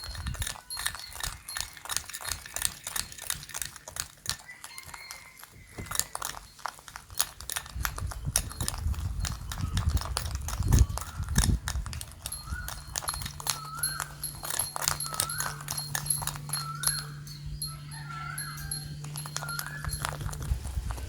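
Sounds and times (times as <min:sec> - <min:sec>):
whisk clicking in a bowl: 0:00.0 - 0:21.0
steady low hum: 0:07.3 - 0:21.0.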